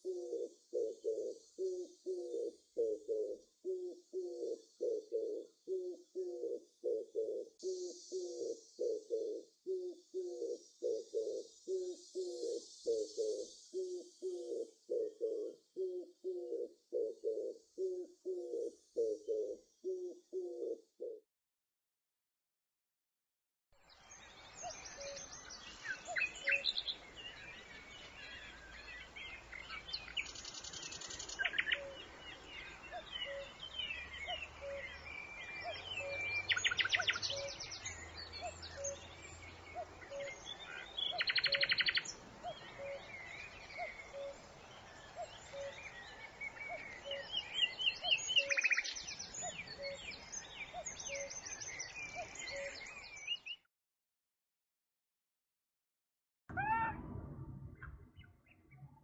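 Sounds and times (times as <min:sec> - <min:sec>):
songbirds singing: 0:00.0 - 0:16.6, 0:23.8 - 0:53.7
faint low repeating note: 0:56.5 - 0:59.0.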